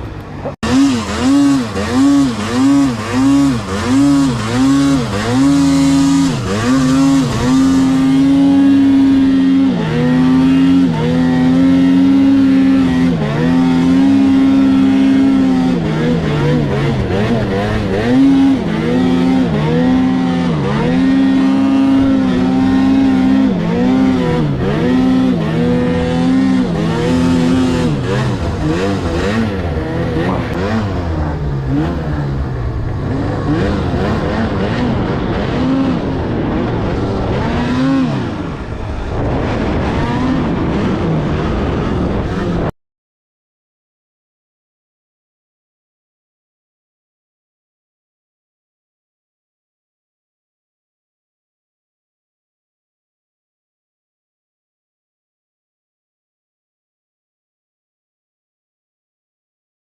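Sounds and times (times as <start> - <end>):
snowmobile engine revving: 0.3 - 42.7.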